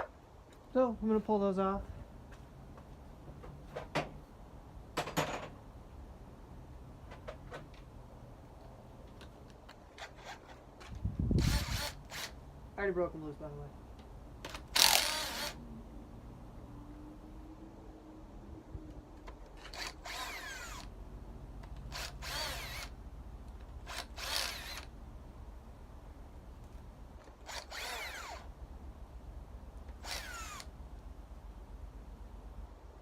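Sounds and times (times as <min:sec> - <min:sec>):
power drill whirring: 0:09.9 - 0:12.4, 0:14.4 - 0:15.6, 0:19.6 - 0:20.9, 0:21.7 - 0:23.0, 0:23.8 - 0:24.9, 0:27.2 - 0:28.5, 0:29.9 - 0:30.7.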